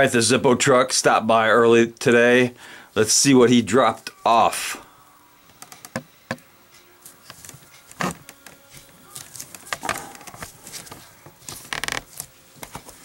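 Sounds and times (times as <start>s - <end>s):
packaging clicks and rustles: 7.3s - 13.0s.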